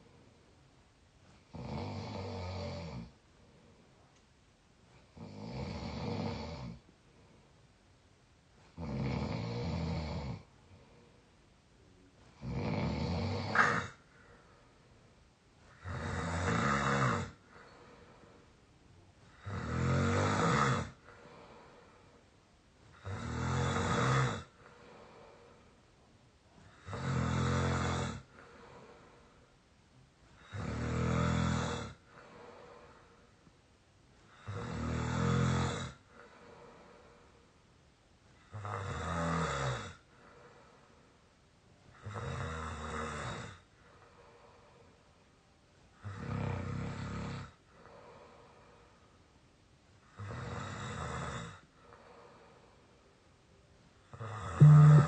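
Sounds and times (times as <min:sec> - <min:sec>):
quiet breathing: 0:00.0 - 0:55.0
person snoring squeakily: 0:12.4 - 0:14.0, 0:15.8 - 0:17.4, 0:19.4 - 0:21.0, 0:23.0 - 0:24.5, 0:26.7 - 0:28.2, 0:30.4 - 0:32.0, 0:34.4 - 0:36.0, 0:46.0 - 0:47.6, 0:54.2 - 0:55.0.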